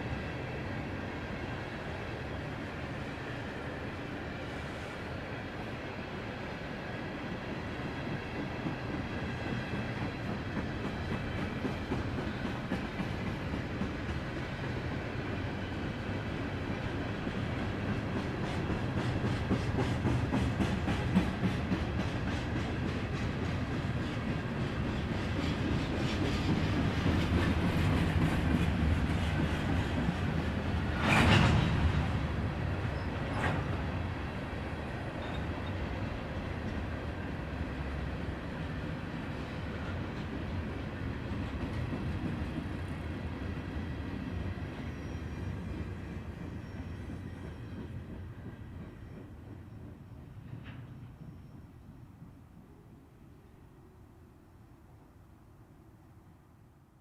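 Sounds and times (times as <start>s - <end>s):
freight train rolling past: 0.0s - 55.1s
wheels clacking on rail joints: 17.2s - 34.2s.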